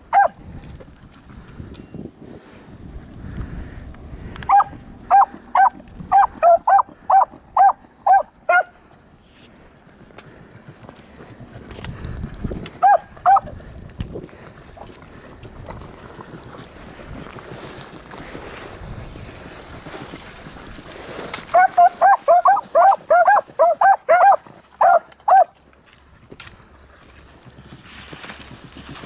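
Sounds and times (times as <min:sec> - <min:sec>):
dogs baying: 0:00.0 - 0:00.4, 0:04.3 - 0:09.0, 0:12.6 - 0:13.7, 0:21.5 - 0:25.6.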